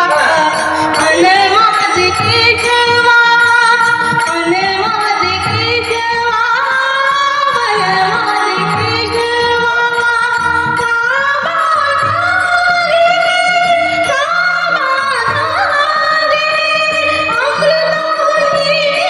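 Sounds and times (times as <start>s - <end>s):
instrumental accompaniment: 0.0s - 19.0s.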